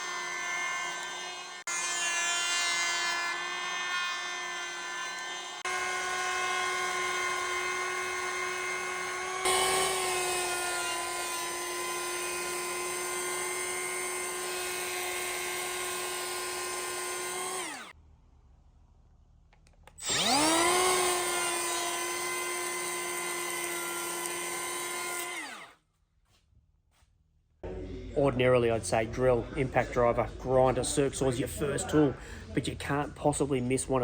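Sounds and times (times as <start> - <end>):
electric planer whining: 0.0 - 18.0, 20.0 - 25.7.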